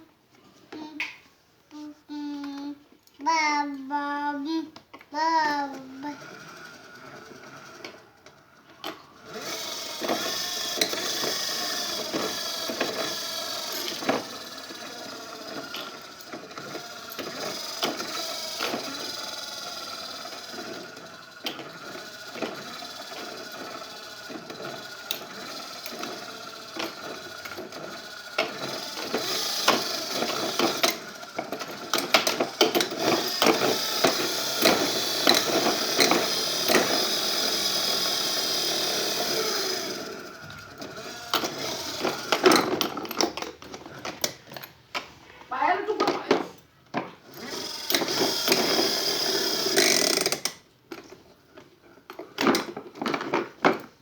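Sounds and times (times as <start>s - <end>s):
small motor running: 3.4s - 8.1s, 9.2s - 43.4s, 47.3s - 50.6s.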